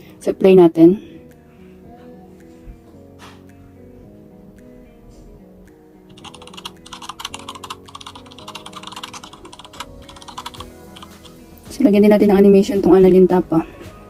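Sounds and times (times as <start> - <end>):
soft background music: 0.0 - 14.0
keyboard typing: 6.1 - 11.4.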